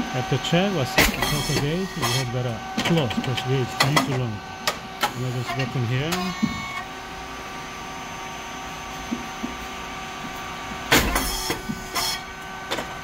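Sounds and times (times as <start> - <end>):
machine humming: 0.0 - 13.0.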